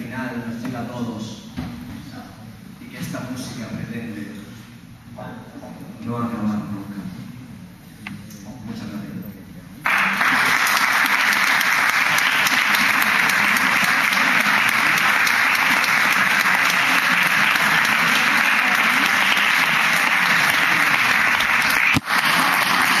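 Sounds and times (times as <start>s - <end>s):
audience applauding: 9.8s - 23.0s.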